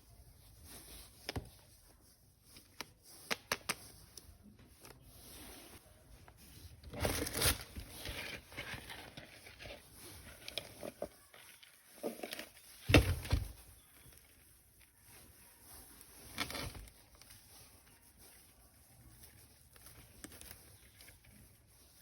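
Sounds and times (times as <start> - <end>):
plastic packaging crinkling: 6.8 - 14.4.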